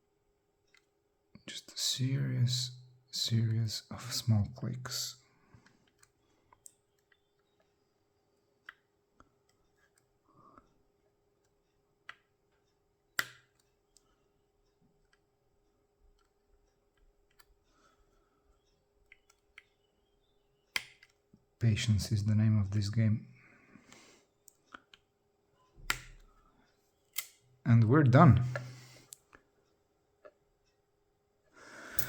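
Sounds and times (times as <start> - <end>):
lock pins clicking: 27.1 - 27.4.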